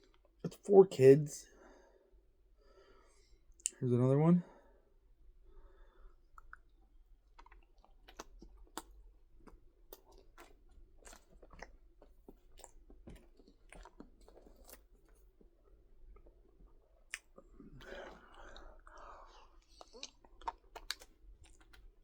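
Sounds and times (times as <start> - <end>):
person chewing food: 6.2 - 22.0.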